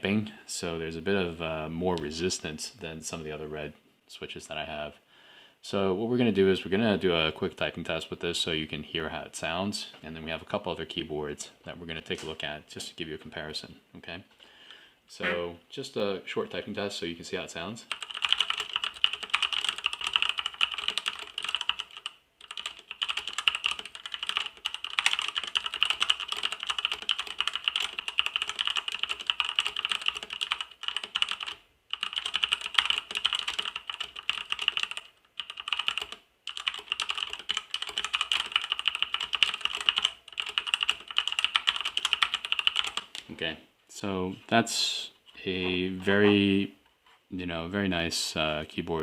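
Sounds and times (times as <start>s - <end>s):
fast mechanical keyboard typing: 17.9s - 43.2s.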